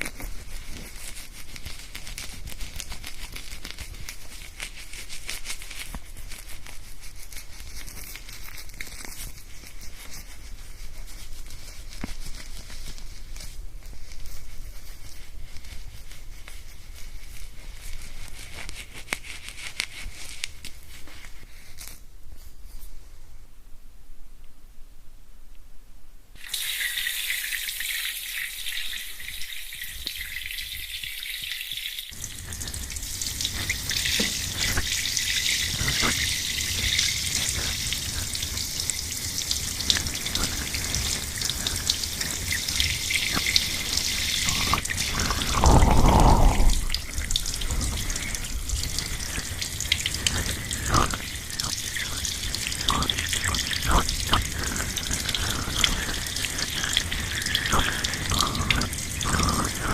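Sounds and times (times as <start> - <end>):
water running: 26.4 - 59.9.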